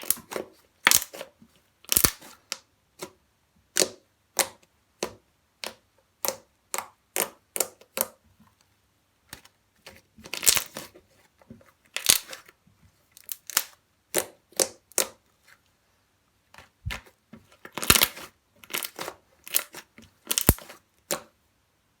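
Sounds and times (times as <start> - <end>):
slime crackling: 17.7 - 21.2.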